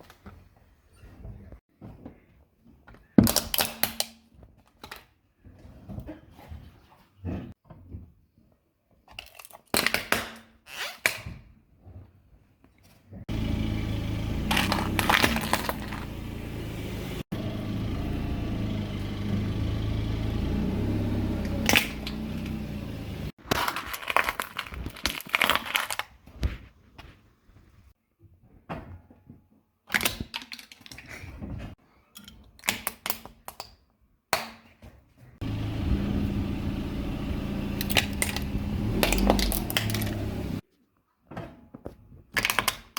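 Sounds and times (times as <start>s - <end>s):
objects crunching under car tyres: 13.3s - 16.4s, 35.4s - 40.6s
car rolling rumble: 13.3s - 23.4s, 35.4s - 40.6s.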